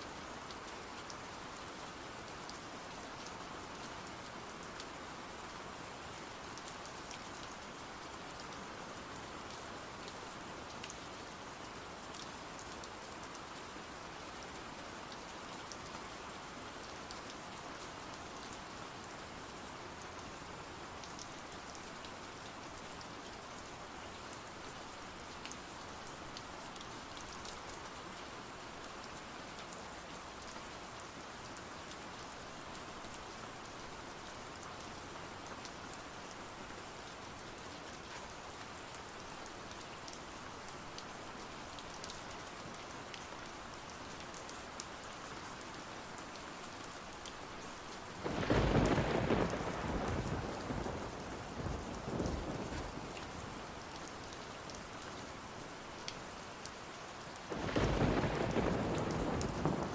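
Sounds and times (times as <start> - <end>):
steady rain: 0.0 - 59.9
thunder clap and rumble: 48.3 - 53.0, 57.6 - 59.9.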